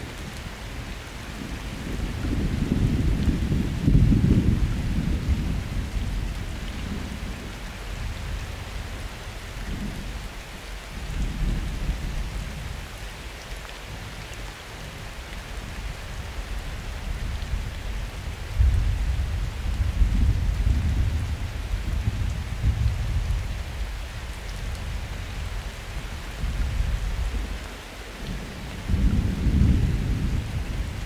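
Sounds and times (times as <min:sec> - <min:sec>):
steady rain: 0:00.0 - 0:31.0
rolling thunder: 0:01.8 - 0:06.3, 0:28.8 - 0:31.0.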